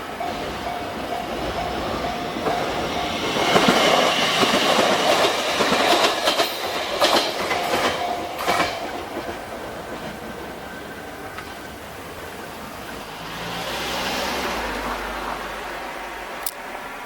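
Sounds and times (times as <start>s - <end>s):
crossing warning bell ringing: 0.0s - 12.6s
electric train passing: 0.0s - 17.0s
wheels clattering over rail joints: 0.1s - 15.5s.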